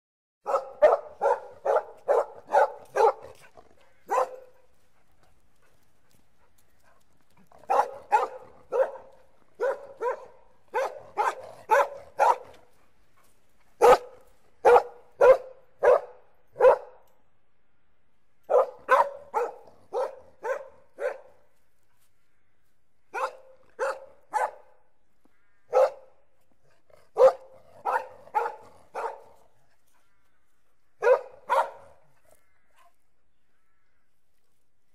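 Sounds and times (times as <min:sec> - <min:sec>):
dog barking angrily: 0:00.4 - 0:04.6, 0:07.5 - 0:12.7, 0:13.8 - 0:17.0, 0:18.5 - 0:21.4, 0:23.1 - 0:24.8, 0:25.7 - 0:26.2, 0:27.0 - 0:29.5, 0:31.0 - 0:32.1.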